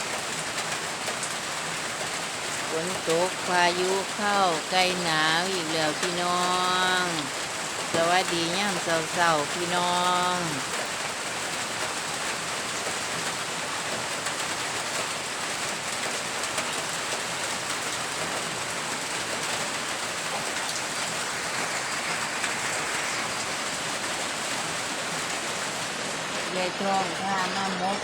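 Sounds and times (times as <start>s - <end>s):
steady rain falling: 0.0s - 28.0s.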